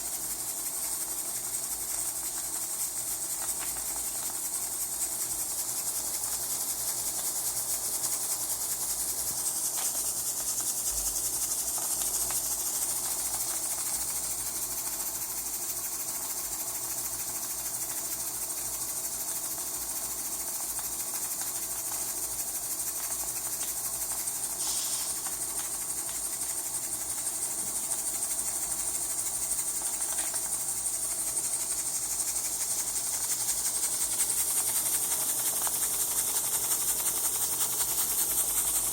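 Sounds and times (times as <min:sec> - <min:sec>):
high steam hiss: 0:17.7 - 0:38.9.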